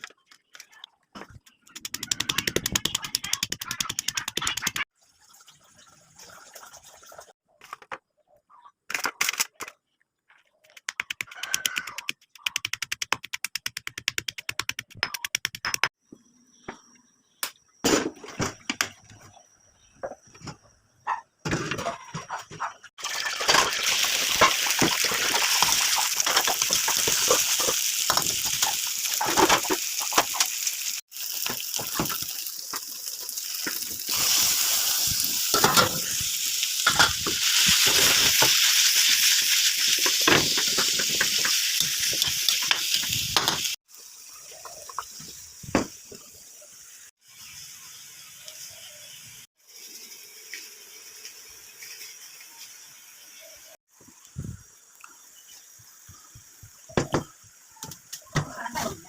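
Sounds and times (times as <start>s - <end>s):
stir-fry sizzling in a pan: 23.0s - 53.7s.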